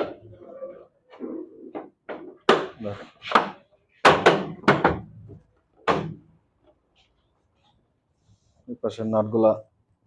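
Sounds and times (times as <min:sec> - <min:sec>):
washing machine panel knocks: 0:03.4 - 0:05.1.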